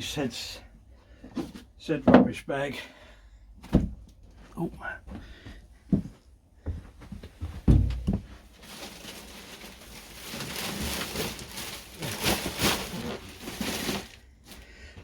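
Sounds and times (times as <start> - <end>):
heavy thud: 7.6 - 8.3.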